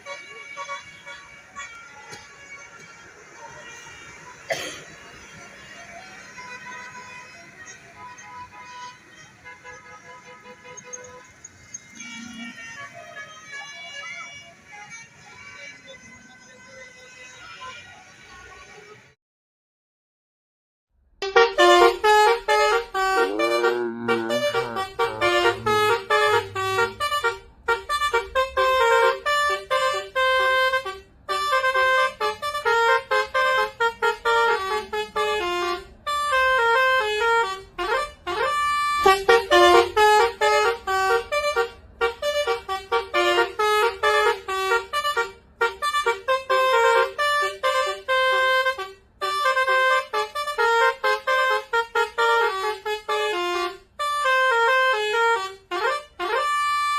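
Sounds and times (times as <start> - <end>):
bus horn playing melody: 0.0 - 2.6, 21.2 - 56.9.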